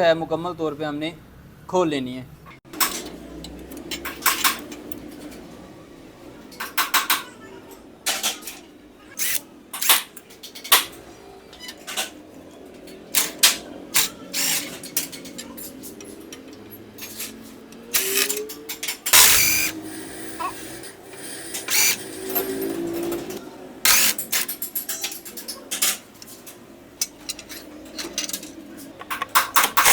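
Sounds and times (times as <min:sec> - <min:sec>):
metal tools clinking on engine casing: 0:02.7 - 0:05.4, 0:24.2 - 0:29.9.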